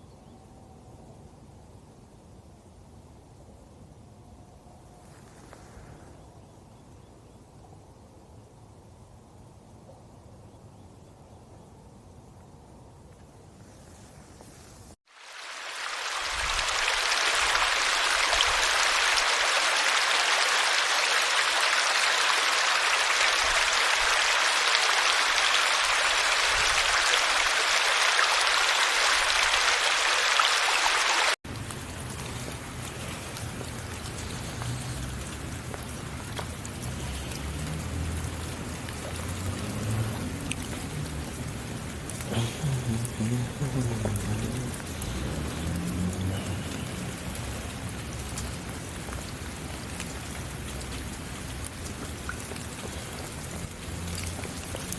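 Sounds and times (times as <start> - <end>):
quiet outdoor ambience: 0.0 - 54.9
heavy rain: 15.1 - 54.9.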